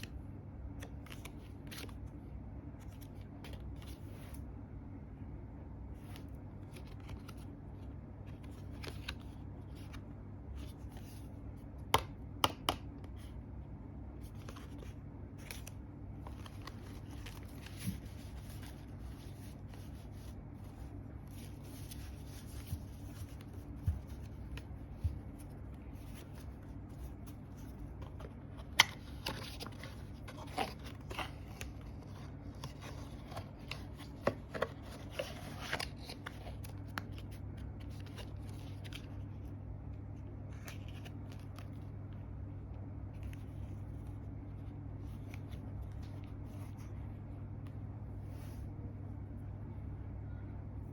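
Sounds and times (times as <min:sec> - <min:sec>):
steady low hum: 0:00.0 - 0:50.9
cards clicking and tapping: 0:11.8 - 0:13.1.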